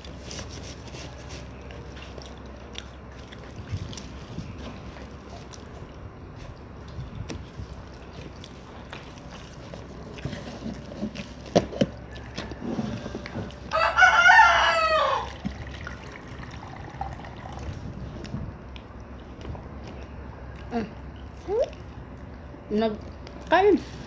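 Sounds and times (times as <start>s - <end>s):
rooster crowing: 13.7s - 15.4s.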